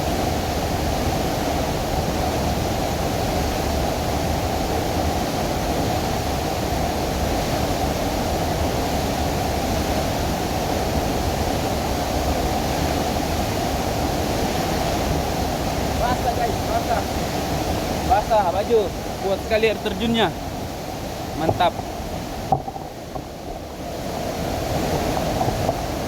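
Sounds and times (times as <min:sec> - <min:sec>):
waterfall rushing: 0:07.5 - 0:26.0.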